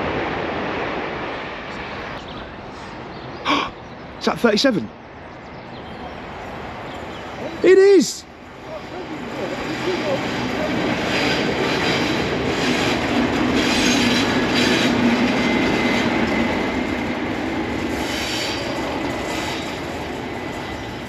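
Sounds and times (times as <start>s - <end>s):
diesel locomotive passing: 0.0s - 21.0s
high wheel squeal: 13.6s - 16.8s, 17.9s - 21.0s.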